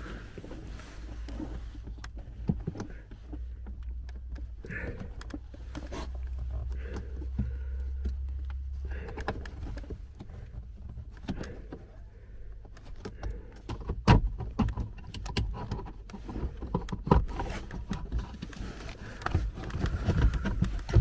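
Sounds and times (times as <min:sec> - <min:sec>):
plastic clicks and rattles: 0:12.5 - 0:21.0.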